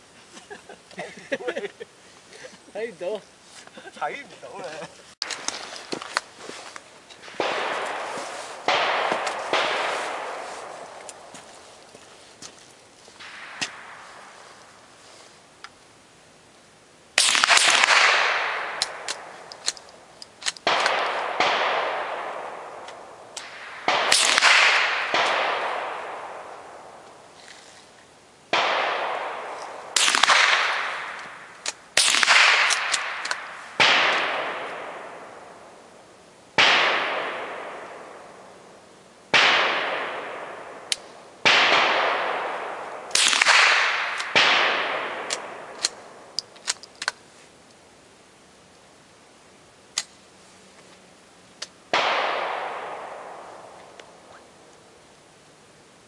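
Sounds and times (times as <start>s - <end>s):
rifle shots echoing: 7.2s - 12.0s, 13.2s - 14.9s, 17.1s - 27.4s, 28.5s - 46.8s, 51.9s - 54.7s
small clicks: 18.8s - 20.7s, 45.3s - 47.2s.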